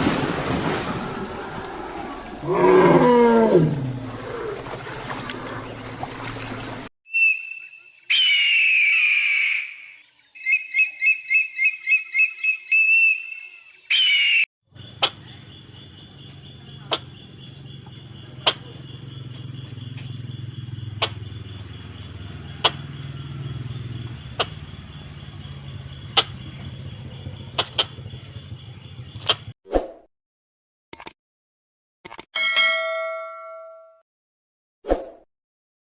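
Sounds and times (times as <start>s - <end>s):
high chirping animal calls: 7.1s - 14.4s.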